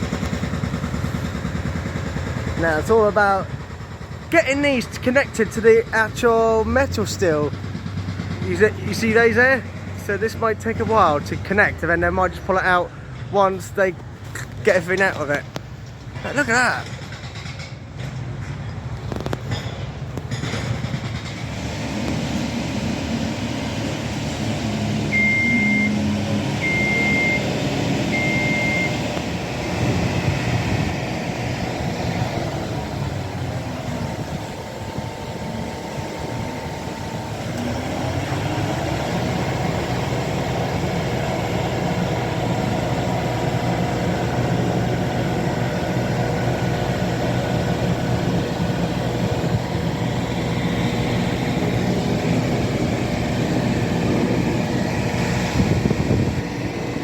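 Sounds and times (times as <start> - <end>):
construction machinery engine running: 0.0 - 57.0
high-pitched warning beeps: 25.1 - 26.0, 26.6 - 29.1.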